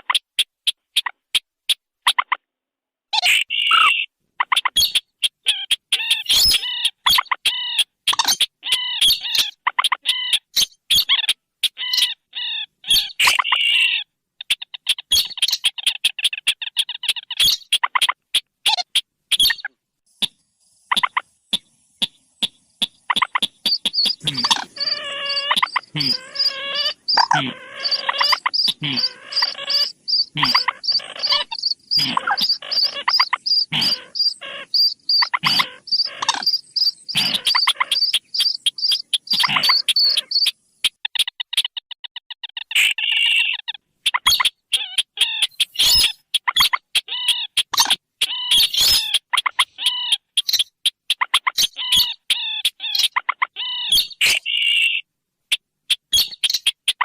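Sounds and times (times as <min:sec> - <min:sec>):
bird calls: 0:00.0 - 0:02.5, 0:03.1 - 0:57.0
high evenly pulsed bird notes: 0:20.1 - 0:40.8
rail calls: 0:21.5 - 0:40.5.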